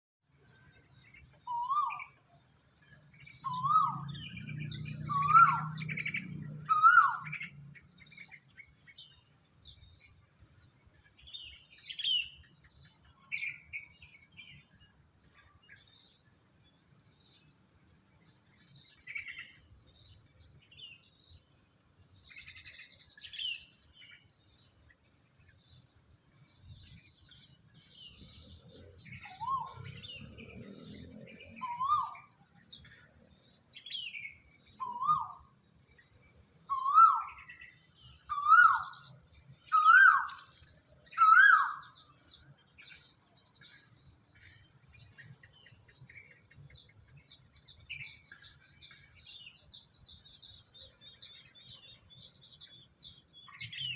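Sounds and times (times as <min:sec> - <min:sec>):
bird calling: 0:01.3 - 0:02.2, 0:03.2 - 0:09.1, 0:28.0 - 0:30.4, 0:31.6 - 0:32.9, 0:33.8 - 0:35.5, 0:36.7 - 0:42.2
bird chirps and whistles: 0:01.4 - 0:02.2, 0:03.4 - 0:04.2, 0:04.8 - 0:06.1, 0:06.7 - 0:07.5, 0:29.2 - 0:30.0, 0:31.6 - 0:32.3, 0:34.8 - 0:35.4, 0:36.7 - 0:37.6, 0:38.3 - 0:39.1, 0:39.7 - 0:40.5, 0:41.1 - 0:42.0.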